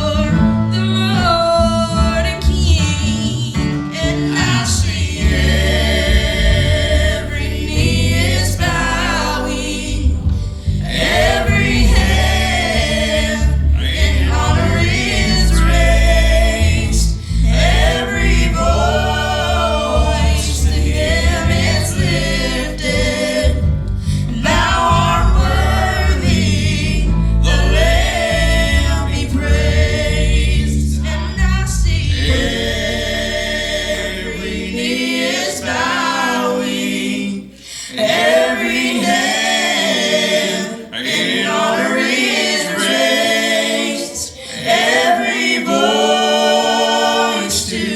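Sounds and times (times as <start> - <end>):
instrumental backing with heavy bass: 0.0 - 36.0
vocal group singing in harmony: 0.0 - 47.9.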